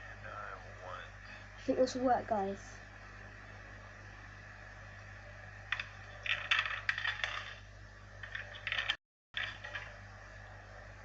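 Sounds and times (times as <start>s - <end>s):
steady low hum: 0.0s - 11.0s
coins clinking in vending machine: 6.2s - 7.6s.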